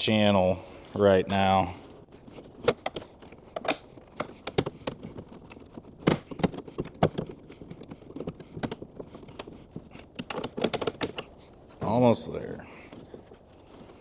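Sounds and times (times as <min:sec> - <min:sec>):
rubber seal clicks and knocks: 0:02.6 - 0:11.3.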